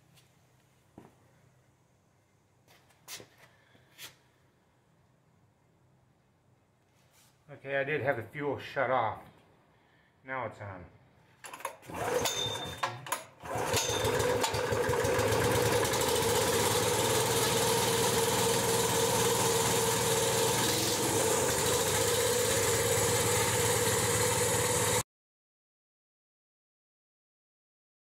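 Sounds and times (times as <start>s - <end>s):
gasoline engine starting and running: 11.4s - 25.0s.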